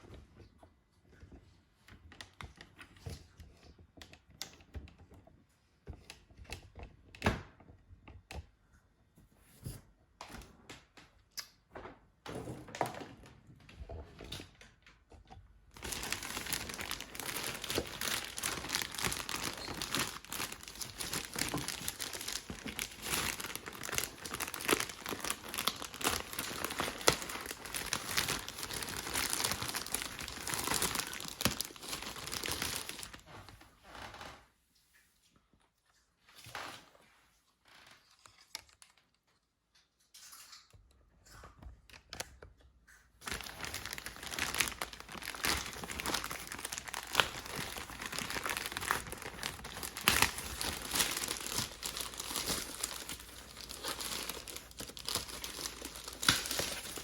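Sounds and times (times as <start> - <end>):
wrapping crinkling and rustling: 13.9 - 34.3, 36.4 - 39.4, 43.2 - 57.0.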